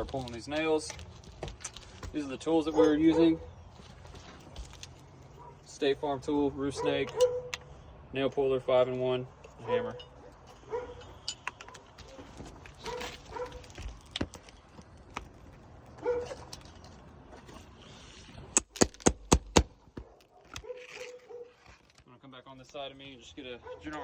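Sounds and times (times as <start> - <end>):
tool clicks and taps on shingles: 18.5 - 21.0.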